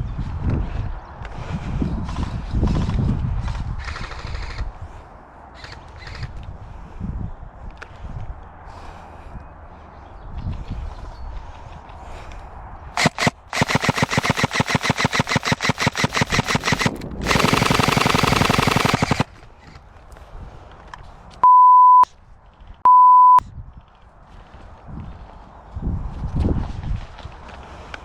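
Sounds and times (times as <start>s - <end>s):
airsoft gun firing: 13.0s - 19.3s
short electronic beeps: 21.4s - 22.1s, 22.9s - 23.4s.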